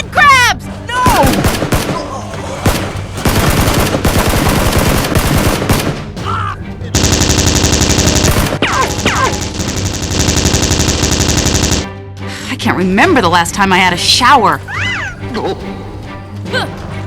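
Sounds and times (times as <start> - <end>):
automatic gunfire: 2.6 - 6.0, 7.0 - 11.9.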